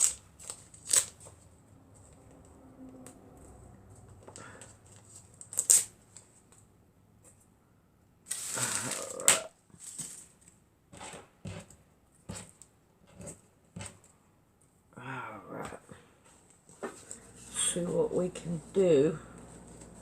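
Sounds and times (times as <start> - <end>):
rustling of craft materials: 0.0 - 7.5, 8.3 - 14.3, 16.0 - 20.0.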